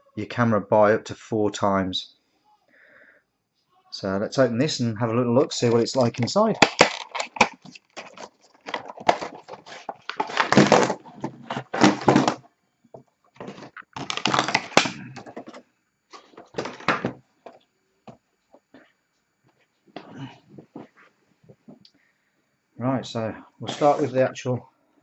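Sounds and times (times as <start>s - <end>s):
packaging rustling and scraping: 5.6s - 12.4s, 13.3s - 17.6s.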